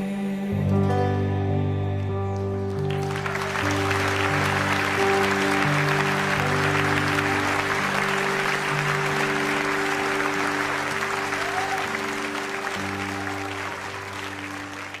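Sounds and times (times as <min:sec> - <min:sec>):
applause: 0:02.4 - 0:15.0
held instrumental chords: 0:03.4 - 0:15.0.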